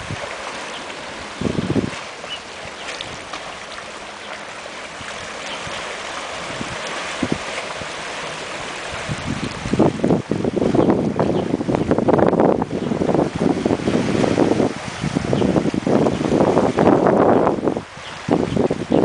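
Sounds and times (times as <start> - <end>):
wind buffeting microphone: 0.0 - 3.7, 4.8 - 19.0
wind rushing: 1.3 - 2.0, 8.9 - 18.9.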